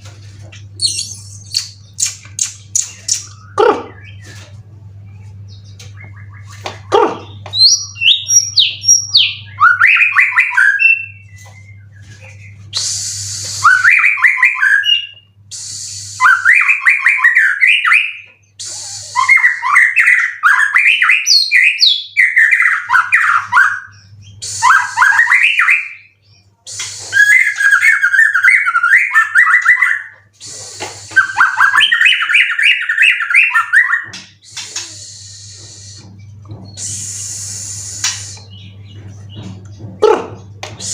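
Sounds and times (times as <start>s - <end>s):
low steady hum: 0.0s - 16.5s, 34.0s - 40.9s
songbird singing whistled trills: 0.8s - 4.5s.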